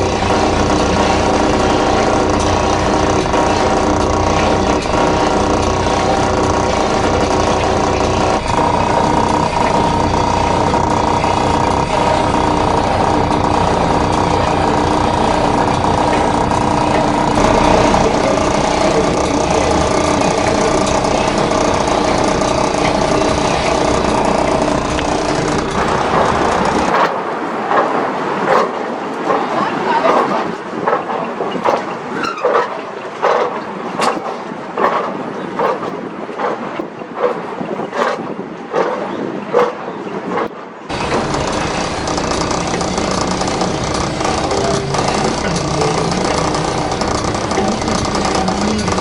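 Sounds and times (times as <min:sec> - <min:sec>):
escalator mechanical rattle: 0:00.0 - 0:38.3, 0:39.3 - 0:49.0
escalator machinery hum: 0:00.0 - 0:49.0
short rising squeak: 0:31.6 - 0:32.8.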